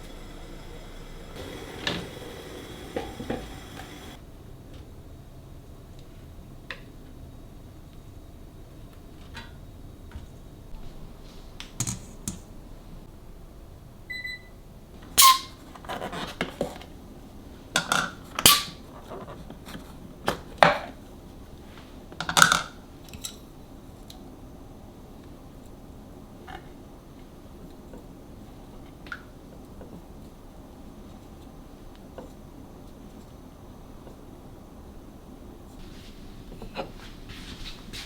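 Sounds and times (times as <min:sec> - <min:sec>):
dishes knocking and clattering: 0:00.1 - 0:04.2.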